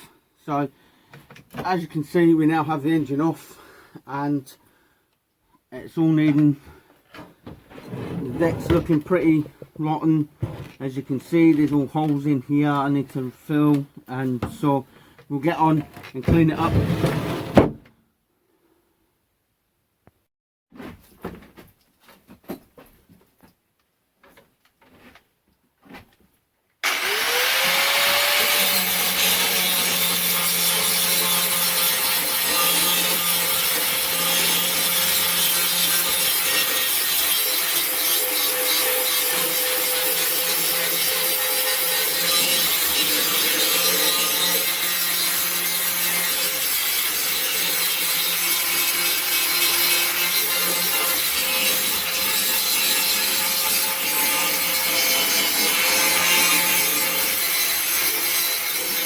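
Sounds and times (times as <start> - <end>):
angle grinder grinding rust: 26.8 - 59.0.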